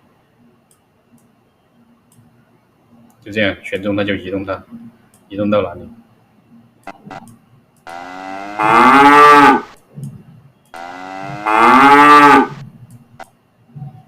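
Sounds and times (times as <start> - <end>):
cow mooing: 7.9 - 9.7, 10.8 - 12.6.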